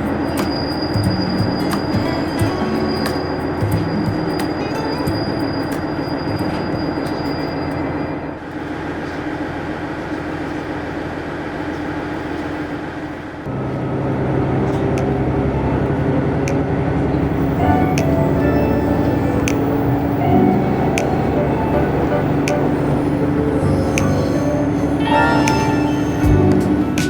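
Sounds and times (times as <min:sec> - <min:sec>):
rail clicks: 0:00.0 - 0:07.9, 0:15.9 - 0:27.0
high wheel squeal: 0:00.0 - 0:08.5, 0:14.2 - 0:27.0.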